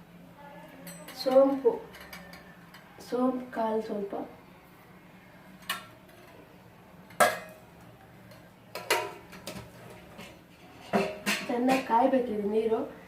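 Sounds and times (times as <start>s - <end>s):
spoon and containers clinking: 0.8s - 2.9s.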